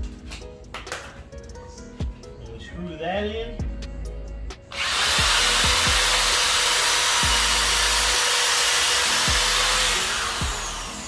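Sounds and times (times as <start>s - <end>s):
power drill driving a screw: 4.7s - 11.0s.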